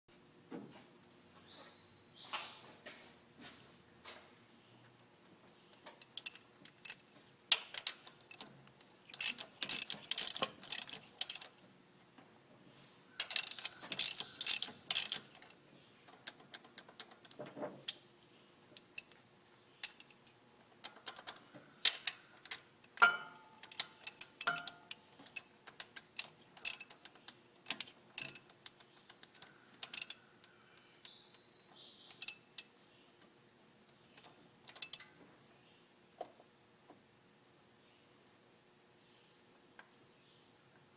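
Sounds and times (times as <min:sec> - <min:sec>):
metallic clanks of hand tools: 0:06.0 - 0:08.5, 0:09.1 - 0:11.5, 0:13.2 - 0:15.5, 0:20.8 - 0:28.5, 0:29.8 - 0:30.3, 0:32.2 - 0:32.7, 0:34.7 - 0:35.2
ratchet clicking: 0:09.1 - 0:11.5, 0:13.2 - 0:15.4, 0:23.6 - 0:27.1, 0:27.7 - 0:28.6, 0:29.8 - 0:30.2.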